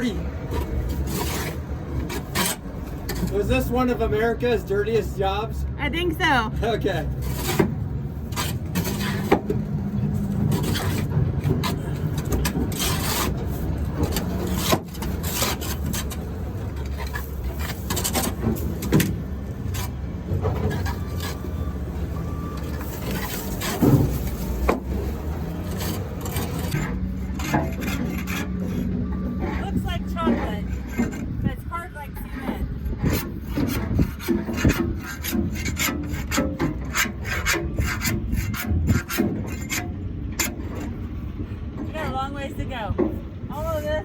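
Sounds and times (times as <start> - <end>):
scraping and knocking at mud: 7.2 - 21.6, 22.6 - 42.2.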